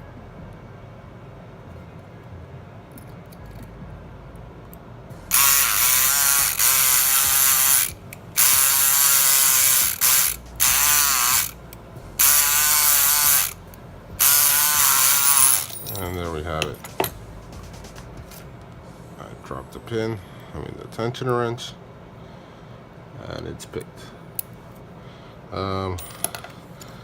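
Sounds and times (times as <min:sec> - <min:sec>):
electric pick gun buzzing: 0:05.2 - 0:16.1.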